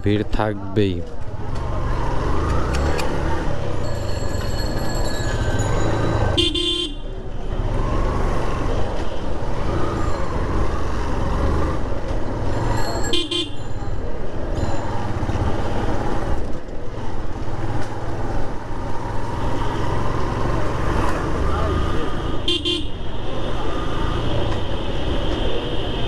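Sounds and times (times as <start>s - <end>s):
traffic engines rumbling: 0.0s - 26.0s
car horn honks: 6.4s - 7.0s, 13.1s - 13.7s, 22.3s - 23.0s.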